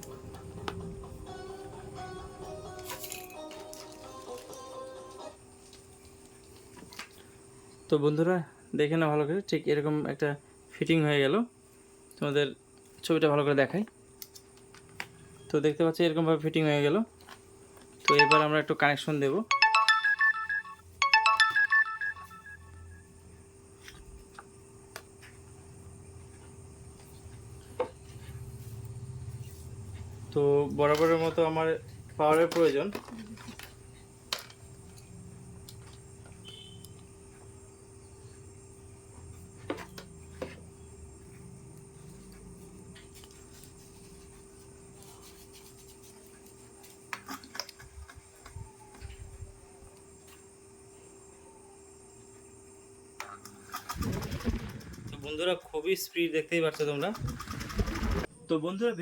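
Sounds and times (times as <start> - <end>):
electronic ringtone melody: 18.1 - 18.8, 19.5 - 23.0.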